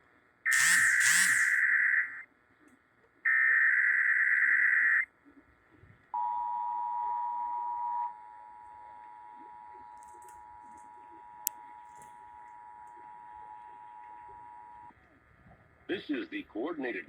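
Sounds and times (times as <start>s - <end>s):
screeching digital data bursts: 0.5s - 1.6s
two-tone attention signal: 0.5s - 1.6s.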